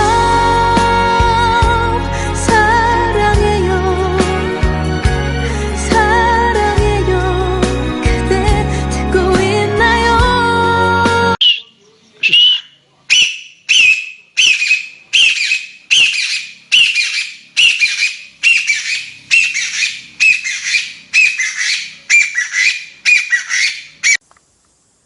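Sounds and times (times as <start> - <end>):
high squawking squeaks: 11.4 - 24.2.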